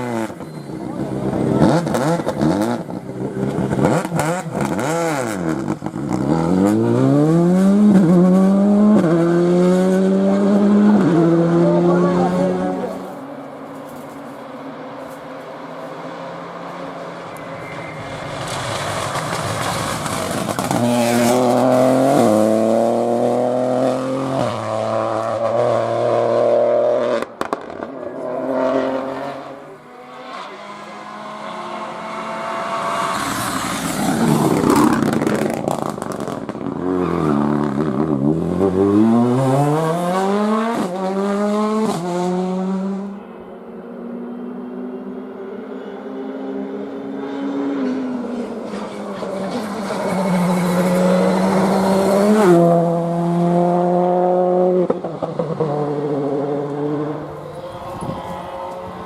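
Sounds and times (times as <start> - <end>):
rally car engines revving with upshifts: 0.0 - 59.0.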